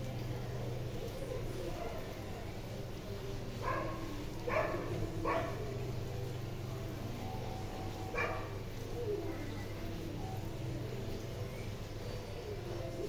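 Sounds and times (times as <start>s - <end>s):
dog barking: 3.6s - 5.7s, 8.1s - 8.6s.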